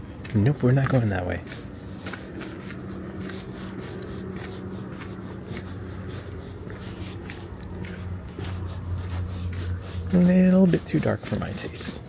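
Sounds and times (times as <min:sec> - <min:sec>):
footsteps walking: 0:00.0 - 0:12.0
steady low hum: 0:00.0 - 0:12.0.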